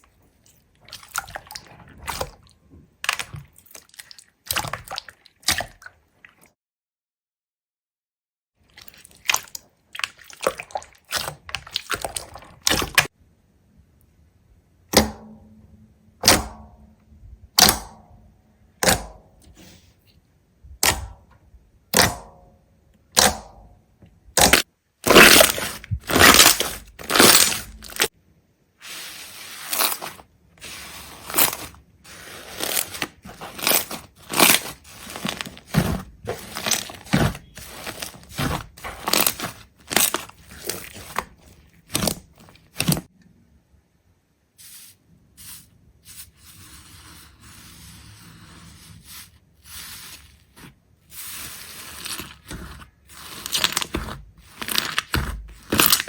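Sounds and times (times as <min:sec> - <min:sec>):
brittle cracking and crunching: 0:24.4 - 0:28.1, 0:31.1 - 0:43.1, 0:51.7 - 0:56.0.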